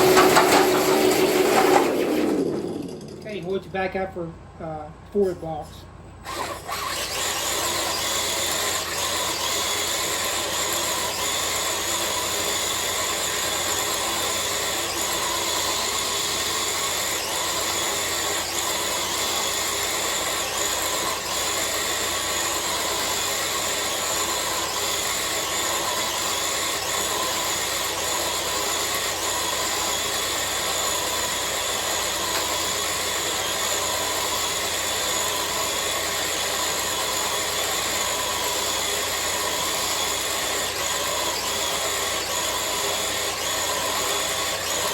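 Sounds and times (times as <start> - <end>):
electric motor whining: 6.2 - 44.9.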